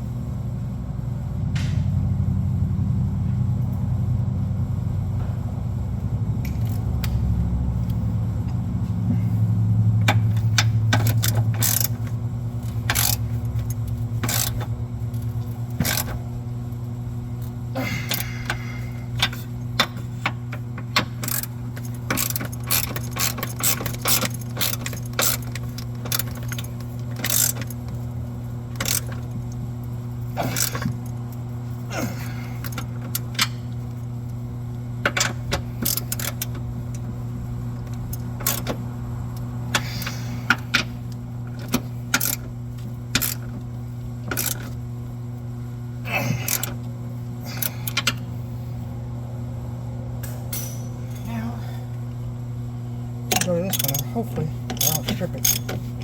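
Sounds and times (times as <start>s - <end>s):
low hum: 0.0s - 56.0s
hand tools clicking: 12.8s - 14.6s, 20.9s - 27.7s, 30.4s - 31.0s, 46.1s - 46.8s, 53.3s - 55.8s
socket ratchet: 12.8s - 14.6s, 21.2s - 27.8s, 54.7s - 55.8s.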